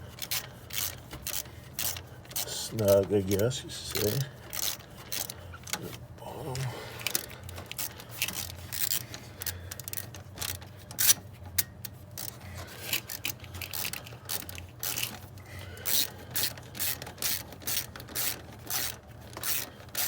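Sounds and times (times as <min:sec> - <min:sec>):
ratchet wrench clicking: 0:00.2 - 0:02.5, 0:03.9 - 0:05.4, 0:07.0 - 0:15.1, 0:15.8 - 0:20.0.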